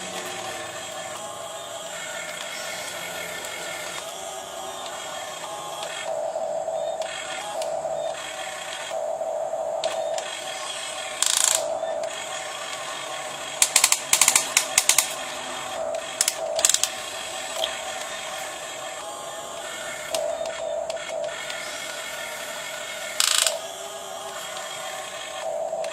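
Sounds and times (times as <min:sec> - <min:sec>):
small electric motors whining: 0:00.0 - 0:25.9
rapid ratchet-like clicking: 0:09.8 - 0:25.9.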